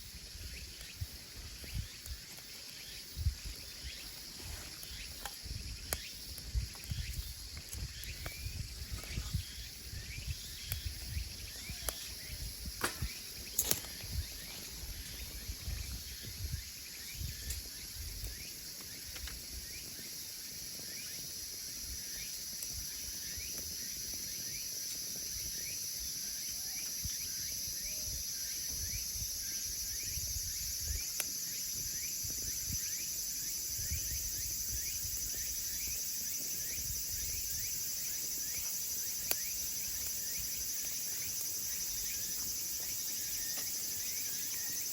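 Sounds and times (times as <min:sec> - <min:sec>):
firewood crackling: 0:00.0 - 0:27.8, 0:28.5 - 0:44.9
insect chirring: 0:00.0 - 0:44.9.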